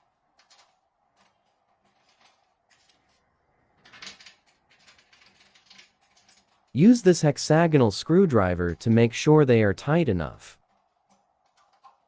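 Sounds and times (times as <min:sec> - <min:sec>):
hex key clicking and scraping: 0:03.8 - 0:06.8.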